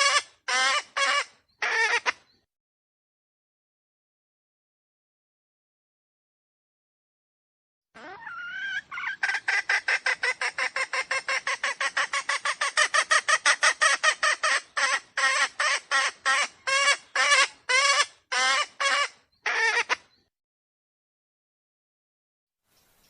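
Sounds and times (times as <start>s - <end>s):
wild chicken clucking call: 0.0s - 2.2s, 8.0s - 20.2s.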